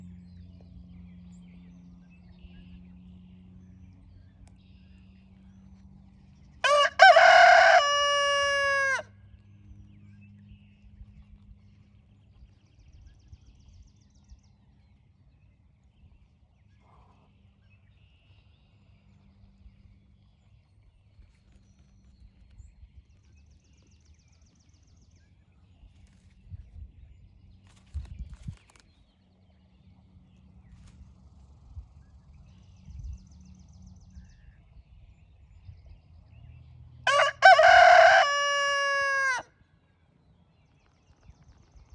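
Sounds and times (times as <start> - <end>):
rooster crowing: 6.6 - 9.1, 37.0 - 39.5.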